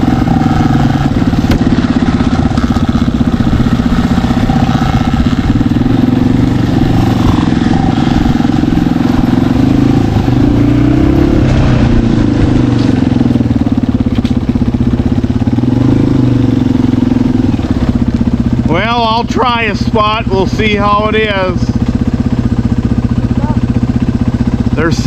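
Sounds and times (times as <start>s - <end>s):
dirt bike engine running: 0.0s - 25.0s.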